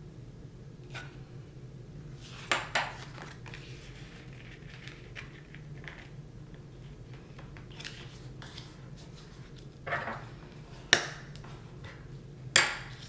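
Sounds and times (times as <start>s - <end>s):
low steady hum: 0.0s - 13.0s
paper rustling: 2.2s - 6.2s, 6.8s - 10.2s.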